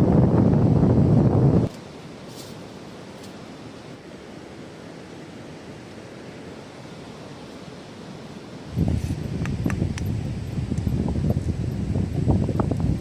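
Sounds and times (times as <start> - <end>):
wind buffeting microphone: 0.0 - 1.7, 8.6 - 13.0
sea surf: 0.0 - 13.0.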